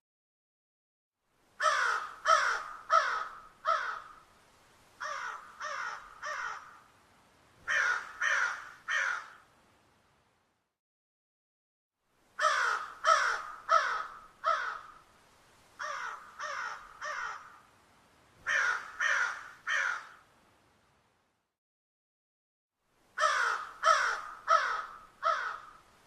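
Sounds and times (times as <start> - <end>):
crows cawing: 1.6 - 4.3, 5.0 - 6.9, 7.6 - 9.5, 12.4 - 15.1, 15.8 - 17.7, 18.4 - 20.3, 23.2 - 25.9.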